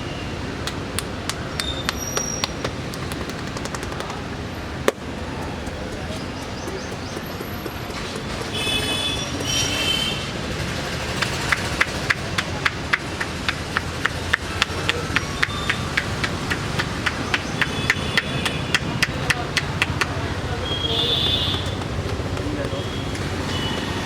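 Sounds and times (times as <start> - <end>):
street background noise: 0.0 - 24.0
hands tapping on head: 0.6 - 4.3, 11.2 - 20.2.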